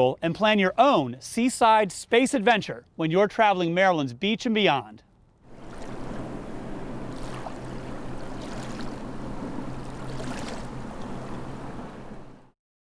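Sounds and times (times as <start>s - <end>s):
low steady hum: 5.2s - 12.5s
faint water splashes: 5.5s - 12.5s
water wash: 5.5s - 12.5s
wind noise: 5.5s - 12.5s.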